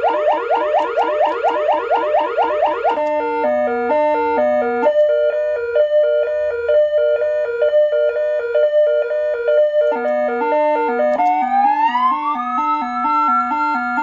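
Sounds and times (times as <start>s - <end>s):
electronic siren tones: 0.0s - 14.0s
siren rising wail: 0.0s - 14.0s.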